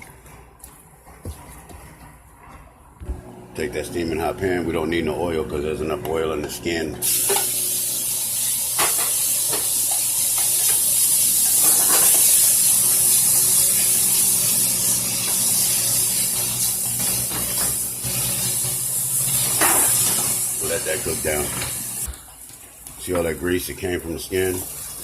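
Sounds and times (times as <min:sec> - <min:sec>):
meat sizzling in a hot pan: 0:07.0 - 0:22.1.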